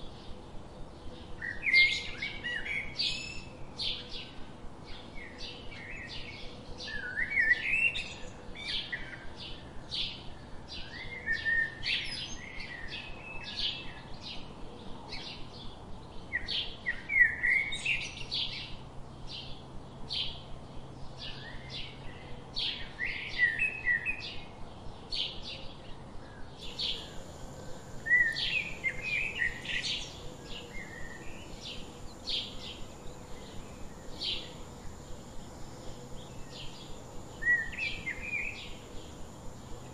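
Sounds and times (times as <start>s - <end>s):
thin steady high tone: 26.6s - 39.9s.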